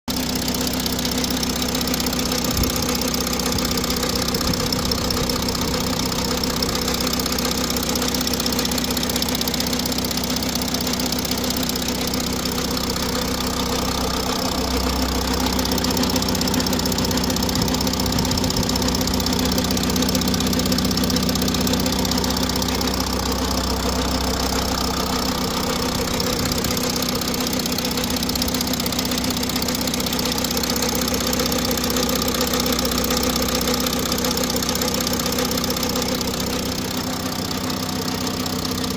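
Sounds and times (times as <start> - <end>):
diesel engine idling: 0.1 - 38.9
deep drone: 12.0 - 30.5.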